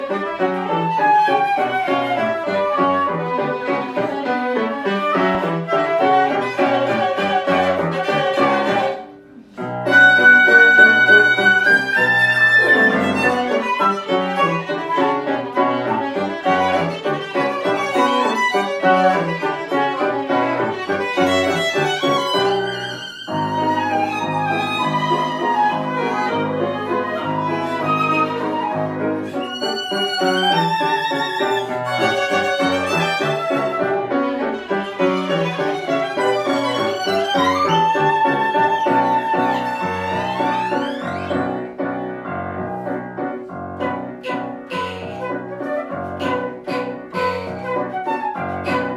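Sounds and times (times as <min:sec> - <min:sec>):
flute: 0:00.0 - 0:09.1, 0:09.8 - 0:19.9, 0:21.2 - 0:48.9
piano: 0:00.0 - 0:48.9
violin melody: 0:00.0 - 0:48.9.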